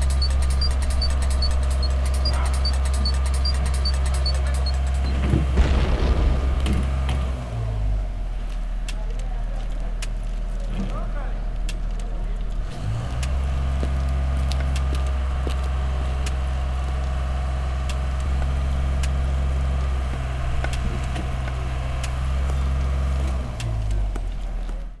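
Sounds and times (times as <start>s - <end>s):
sharp clicks and ticks: 0.0s - 7.4s
low motor hum: 0.0s - 25.0s.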